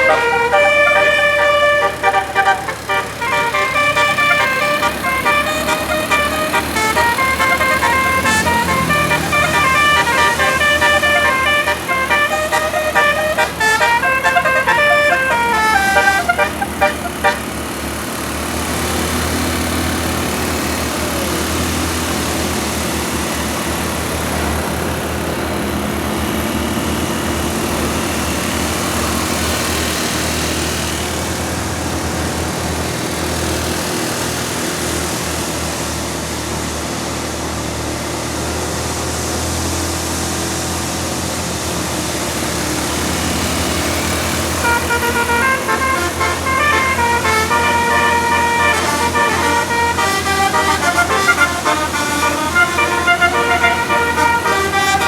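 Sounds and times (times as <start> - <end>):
bus musical horn tune: 0.0 - 18.1, 42.8 - 55.0
low vehicle rumble: 0.0 - 21.8, 42.5 - 55.0.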